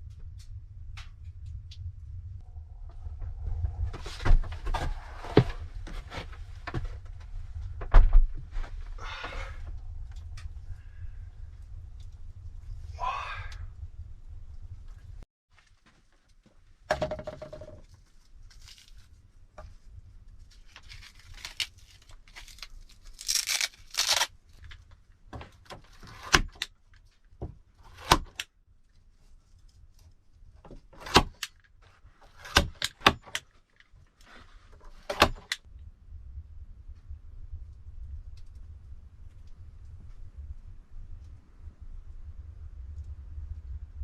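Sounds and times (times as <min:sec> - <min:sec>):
rustling: 0:17.8 - 0:28.0.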